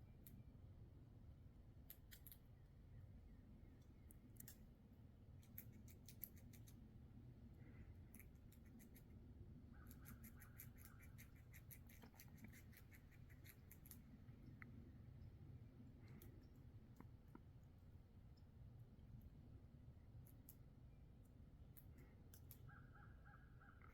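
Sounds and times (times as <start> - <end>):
squirrel gnawing nutshell: 1.9 - 2.4, 5.4 - 6.8, 8.1 - 9.1, 9.8 - 14.8.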